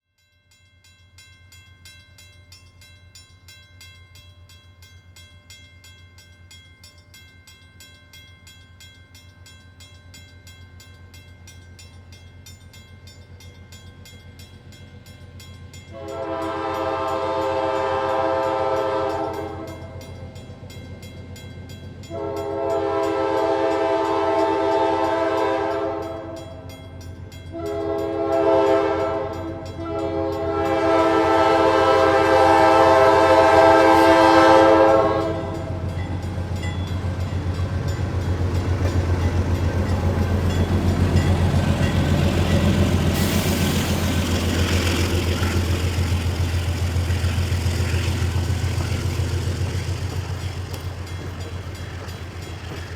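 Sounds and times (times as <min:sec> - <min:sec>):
diesel locomotive engine: 0:03.1 - 0:52.9
train wheels clattering on rails: 0:11.8 - 0:52.9
locomotive air horn blasts: 0:15.9 - 0:20.0, 0:22.1 - 0:26.4, 0:27.5 - 0:35.8.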